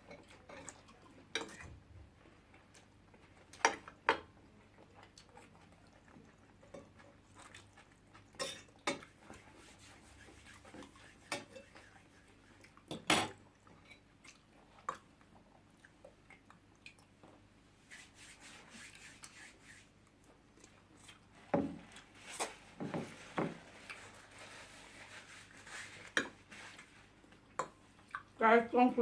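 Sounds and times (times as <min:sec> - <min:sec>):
cutlery scraping a plate: 0:08.3 - 0:09.1, 0:10.4 - 0:11.9
person chewing: 0:27.3 - 0:28.4.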